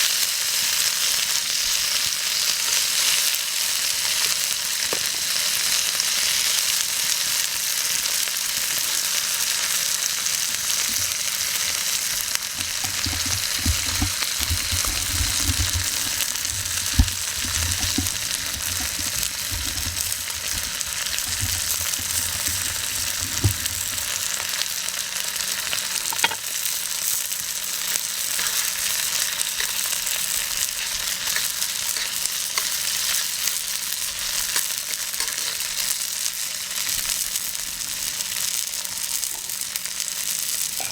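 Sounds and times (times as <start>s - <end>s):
meat sizzling in a frying pan: 0.0s - 40.9s
knocks and stirring in pan: 10.8s - 11.3s, 12.1s - 24.6s, 26.1s - 26.5s.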